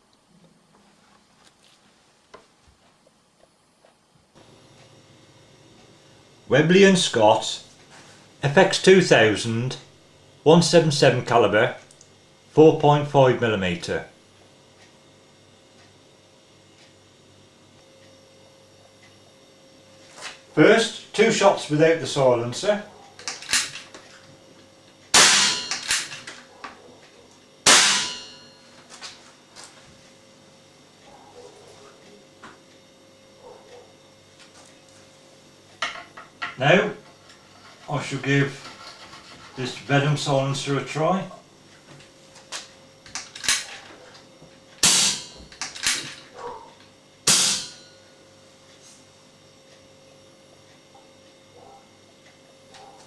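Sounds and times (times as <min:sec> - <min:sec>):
air rifle shots: 0:25.2 - 0:26.2, 0:27.7 - 0:28.4, 0:44.8 - 0:45.4.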